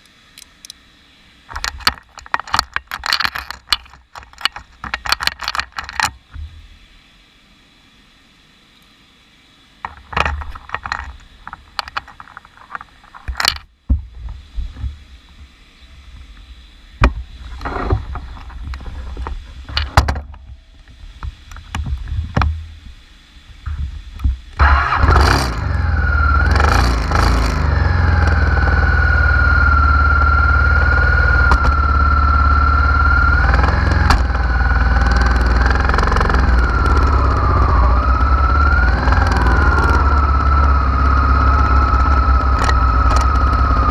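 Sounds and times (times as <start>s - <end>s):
wavering whine: 9.8s - 43.9s
motorcycle engine starting and idling: 24.6s - 43.9s.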